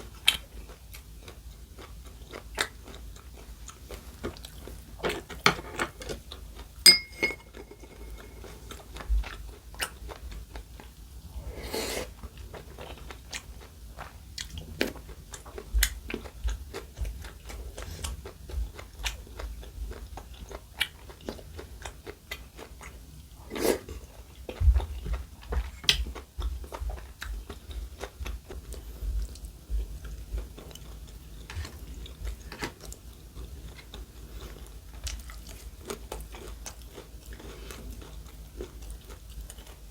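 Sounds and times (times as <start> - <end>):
chewing and crunching food: 0.0 - 6.8, 8.3 - 39.9
utensil clinking on dish: 6.9 - 8.4.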